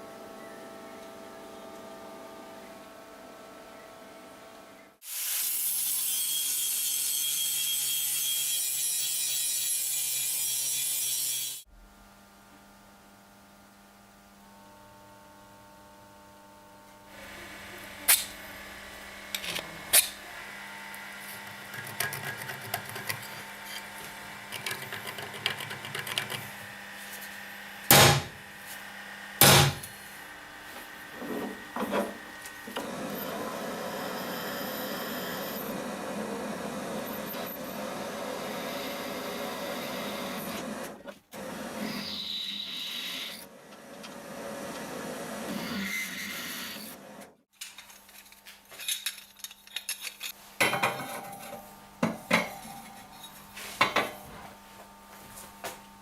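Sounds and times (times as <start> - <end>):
power tool running: 17.1 - 25.2, 25.8 - 47.3
metal parts clicking: 47.6 - 50.4.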